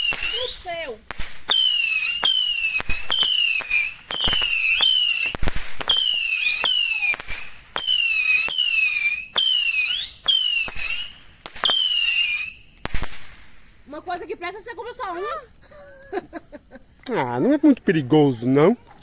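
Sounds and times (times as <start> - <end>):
whistling fireworks: 0.0 - 14.4
firework cracks: 0.0 - 15.7.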